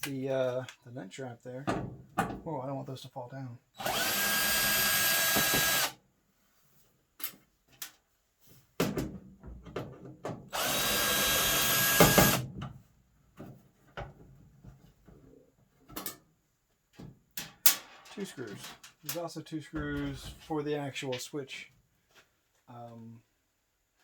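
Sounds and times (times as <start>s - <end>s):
power drill whining: 3.8s - 6.0s, 10.5s - 12.4s.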